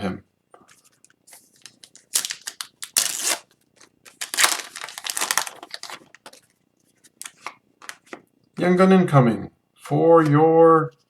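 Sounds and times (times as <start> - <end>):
foil wrapper crinkling: 0.8 - 8.1.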